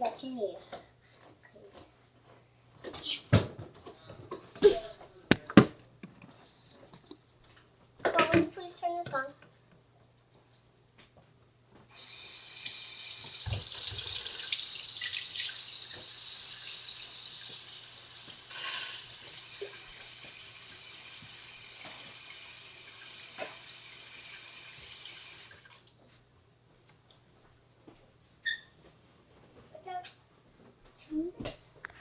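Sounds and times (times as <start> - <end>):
tap running into sink: 13.2 - 16.2, 23.0 - 23.7.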